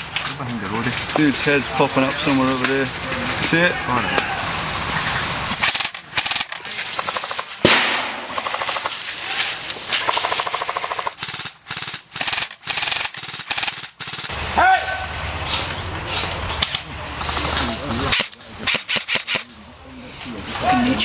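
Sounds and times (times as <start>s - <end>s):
airsoft guns firing bursts: 5.6s - 9.0s, 10.0s - 14.4s, 18.1s - 19.5s.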